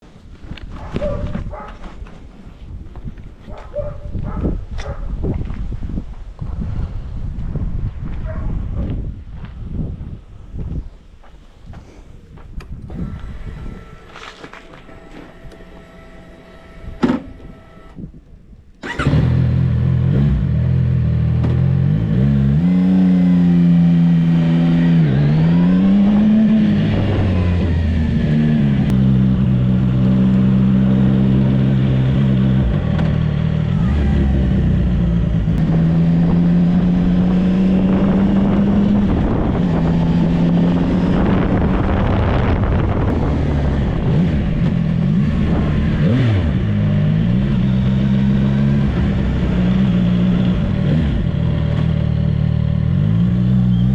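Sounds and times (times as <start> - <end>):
motorcycle engine revving: 12.9 - 18.0, 18.8 - 53.9.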